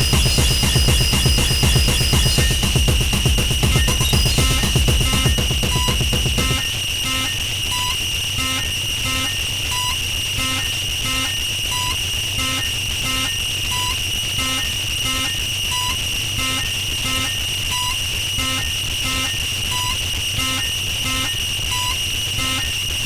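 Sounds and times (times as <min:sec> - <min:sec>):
high-pitched electronic drone: 0:00.0 - 0:09.4.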